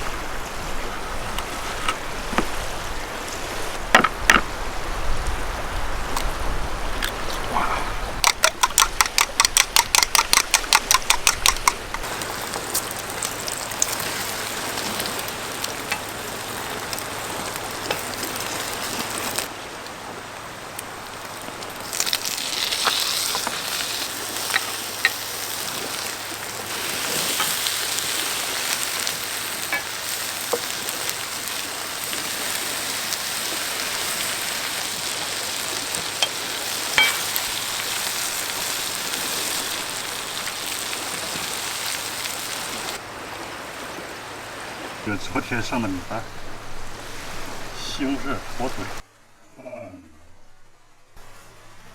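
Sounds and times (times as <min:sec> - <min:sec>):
sharp evenly spaced ticks: 0:08.2 - 0:12.1
food sizzling in a pan: 0:12.0 - 0:19.5, 0:21.2 - 0:43.0.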